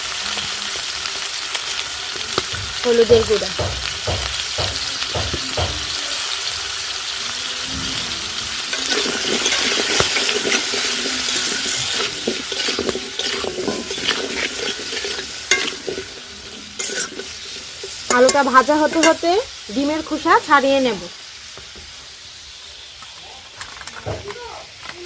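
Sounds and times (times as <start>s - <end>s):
potatoes sizzling in oil: 0.0s - 25.0s
spatula scraping pan: 7.6s - 19.4s.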